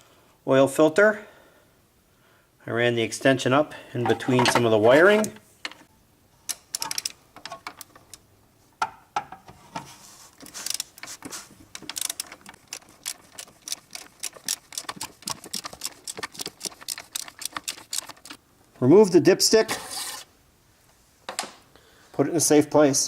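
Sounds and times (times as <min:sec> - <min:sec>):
socket ratchet clicking: 0:06.5 - 0:08.2, 0:11.8 - 0:18.4.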